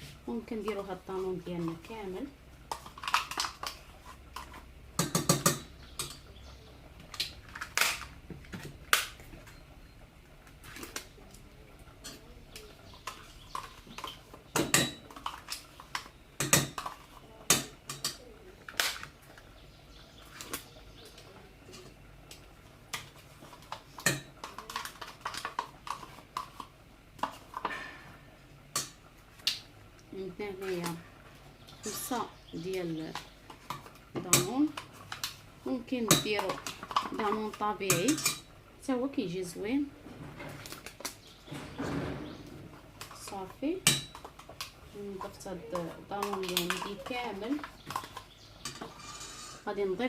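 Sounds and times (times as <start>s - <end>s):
spoon clinking and scraping pots: 12.0s - 18.2s, 23.0s - 29.0s, 31.8s - 32.3s, 36.0s - 38.5s, 43.0s - 49.7s.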